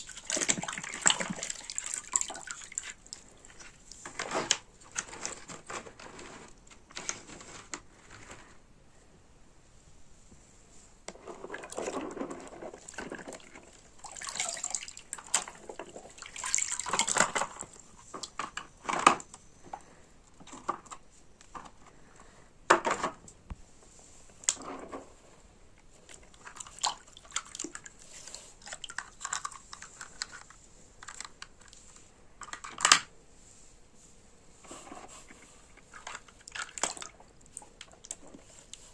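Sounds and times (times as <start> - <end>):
water splashing and sloshing: 0.0 - 4.6, 11.1 - 18.4, 25.9 - 29.8, 34.8 - 38.7.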